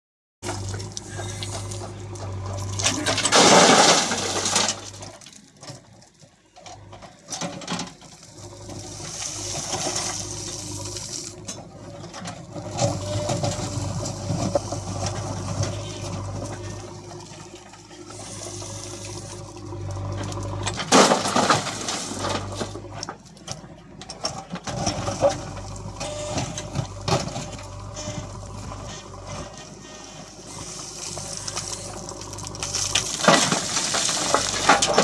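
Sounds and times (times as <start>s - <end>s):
diesel engine humming: 0.4s - 35.0s
earth and stones pouring: 2.6s - 5.5s, 8.3s - 11.4s, 12.8s - 22.8s, 26.6s - 35.0s.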